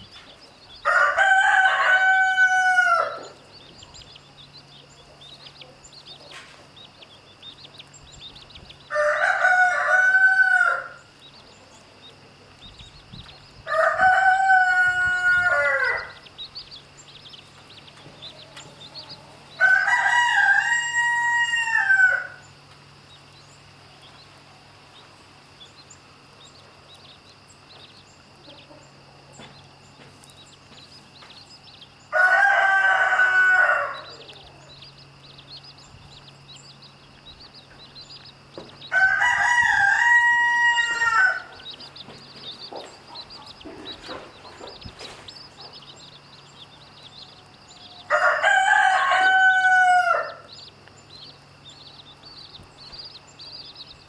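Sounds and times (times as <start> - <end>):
rooster crowing: 0.8 - 3.4, 8.8 - 11.1, 13.6 - 16.3, 18.2 - 22.5, 32.0 - 35.6, 38.8 - 41.8, 47.1 - 50.7.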